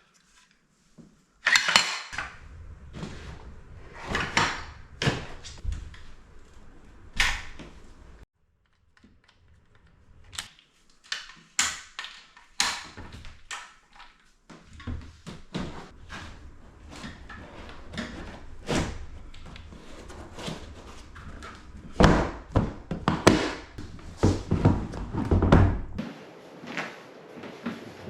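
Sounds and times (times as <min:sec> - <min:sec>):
hard objects clunking and thudding: 0:14.6 - 0:26.0.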